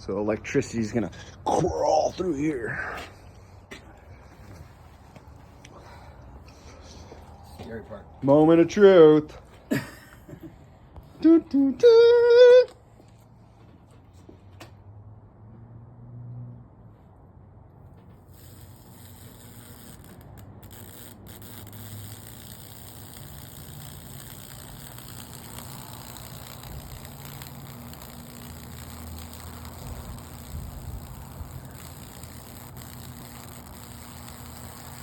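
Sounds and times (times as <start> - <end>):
electric arc crackling and sizzling: 18.2 - 35.0
transformer humming: 18.2 - 35.0.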